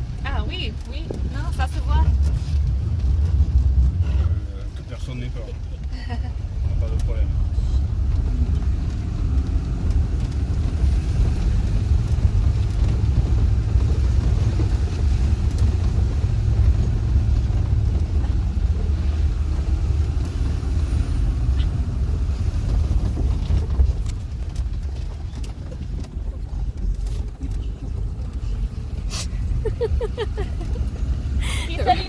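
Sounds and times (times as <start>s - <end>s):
vehicle engine and road rumble: 0.0s - 32.0s
small clicks and rattles: 22.5s - 29.1s.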